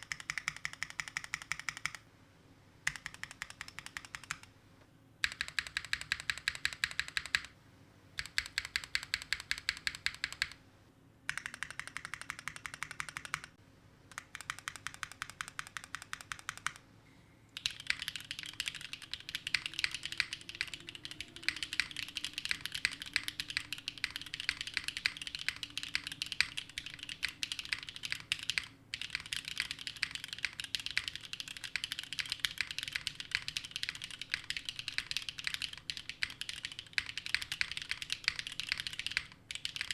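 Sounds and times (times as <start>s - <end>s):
mechanical keyboard typing: 0.0s - 2.0s, 2.9s - 4.5s, 5.2s - 7.5s, 8.2s - 10.6s, 11.3s - 16.8s, 17.6s - 39.9s.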